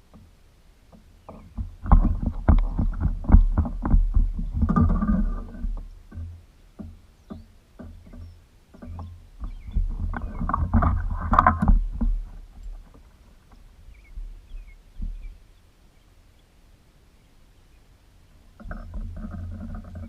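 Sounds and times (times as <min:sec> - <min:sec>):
rustling and clattering: 0:00.0 - 0:15.5, 0:18.5 - 0:20.0
knocks and thumps in boat: 0:00.9 - 0:15.4, 0:18.6 - 0:20.0.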